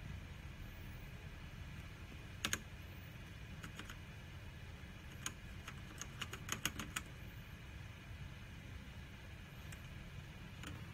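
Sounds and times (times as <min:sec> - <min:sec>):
low rumble and hiss: 0:00.0 - 0:10.9.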